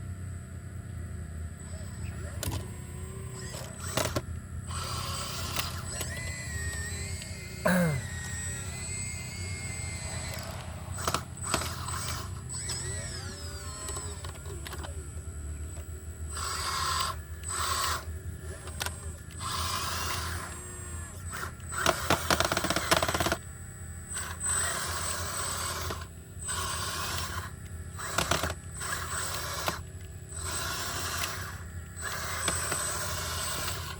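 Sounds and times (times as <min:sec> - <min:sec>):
excavator engine humming: 0:00.9 - 0:33.9
hydraulic hiss and clatter: 0:03.3 - 0:14.9, 0:15.7 - 0:23.4, 0:24.1 - 0:33.9
sharp falling squeal: 0:05.8 - 0:13.6.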